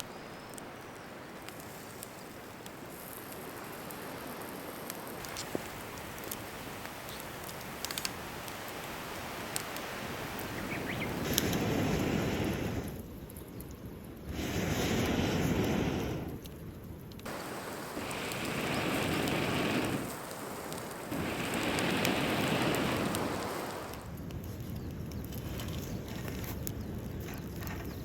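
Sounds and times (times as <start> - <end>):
campfire crackling and popping: 0.3 - 28.0
wind gust on microphone: 8.9 - 13.1, 14.2 - 16.4, 17.3 - 28.0.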